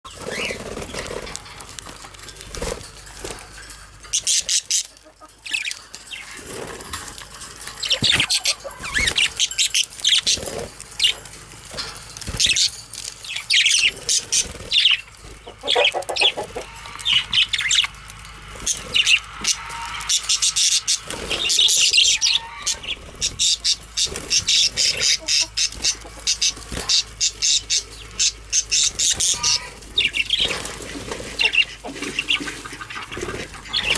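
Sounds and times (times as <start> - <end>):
grass rustling: 0.1 - 33.9
wings fluttering: 0.1 - 33.9.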